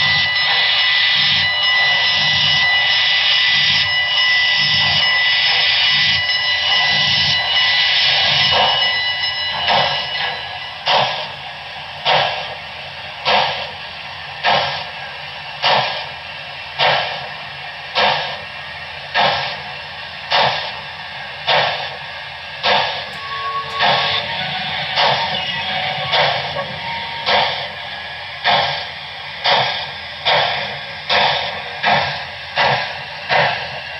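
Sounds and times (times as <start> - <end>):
steam exhaust chuffs: 8.0 - 33.9
loud steam hiss: 9.6 - 33.9.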